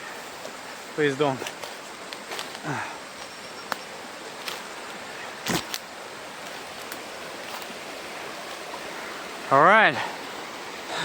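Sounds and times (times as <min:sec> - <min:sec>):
river rushing over rocks: 0:03.8 - 0:11.0.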